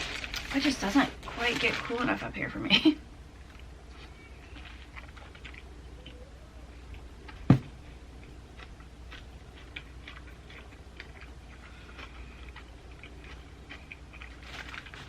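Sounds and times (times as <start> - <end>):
low steady hum: 0.0 - 15.0
close-up chewing: 3.4 - 15.0
sharp thump: 7.5 - 7.7.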